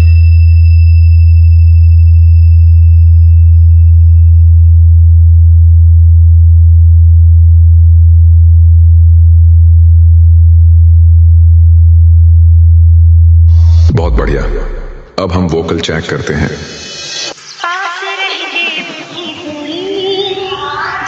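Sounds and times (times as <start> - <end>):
deep bass sine tone: 0.0 - 15.2.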